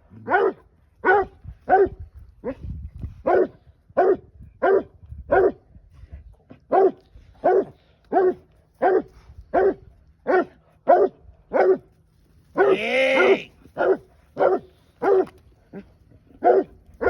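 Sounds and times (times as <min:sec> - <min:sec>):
hound baying: 0:12.6 - 0:16.8.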